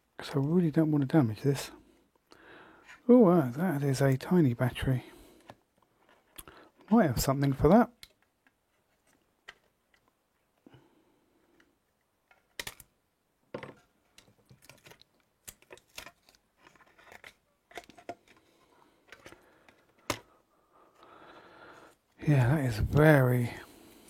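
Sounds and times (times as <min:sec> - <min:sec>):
hands handling plastic device: 0:05.2 - 0:10.6, 0:11.4 - 0:21.0.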